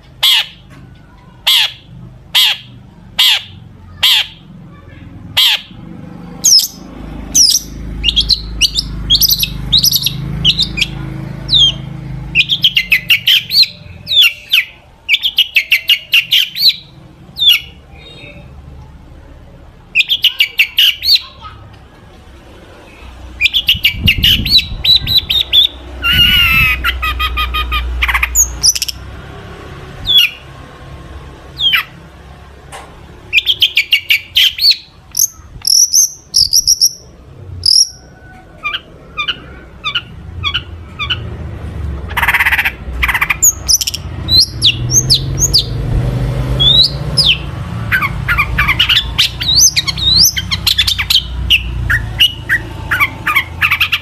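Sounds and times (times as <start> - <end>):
bird singing trills and whistles: 6.4 - 18.5, 20.0 - 21.4, 22.9 - 29.0, 33.3 - 41.2, 42.2 - 45.8, 46.6 - 54.0.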